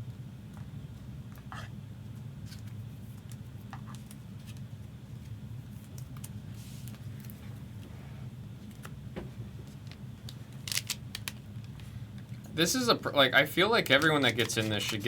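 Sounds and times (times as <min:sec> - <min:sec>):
steady low hum: 0:00.0 - 0:15.0
cards clicking and scraping: 0:09.7 - 0:11.8, 0:13.7 - 0:15.0.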